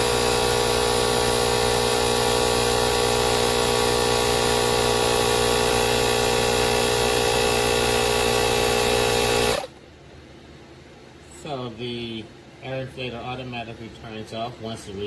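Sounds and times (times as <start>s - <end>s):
tire inflator compressor running: 0.0s - 9.7s.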